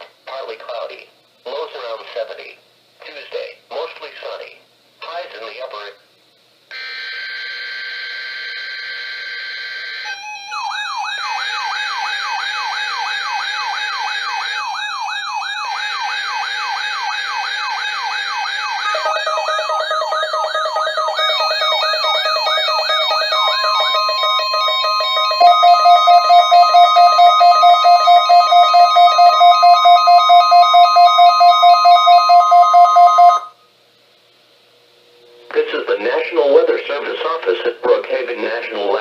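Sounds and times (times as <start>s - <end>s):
steady high alarm tone: 6.7s - 33.6s
rising siren whoop: 9.6s - 33.4s
warbling beeping tones: 18.8s - 33.6s.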